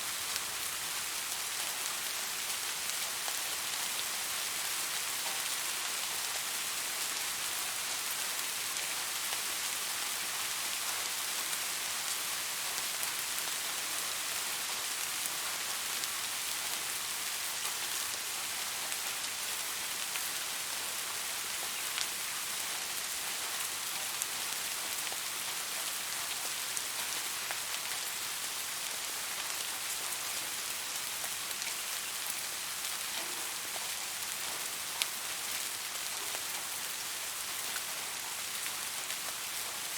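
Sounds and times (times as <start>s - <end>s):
steady rain hiss: 0.0s - 39.9s
raindrops ticking on a surface: 0.2s - 39.9s.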